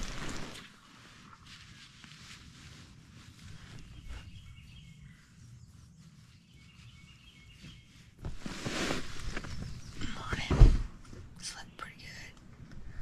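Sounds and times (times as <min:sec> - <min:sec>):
rustling handling noise: 0:00.0 - 0:11.4
faint bird chirps: 0:03.5 - 0:08.2, 0:11.4 - 0:12.4.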